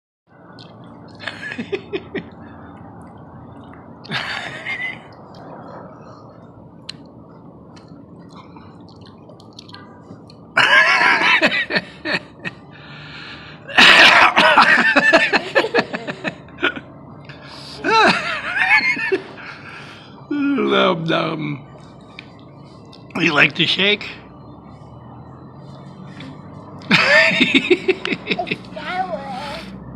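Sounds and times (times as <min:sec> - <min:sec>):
person coughing and sniffing: 0:13.7 - 0:14.6.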